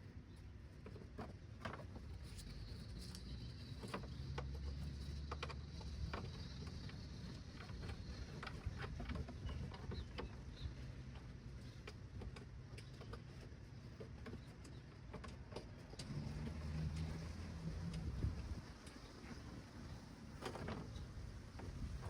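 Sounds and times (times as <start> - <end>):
low steady rumble: 0.0 - 22.0
light clicks and knocks: 0.6 - 22.0.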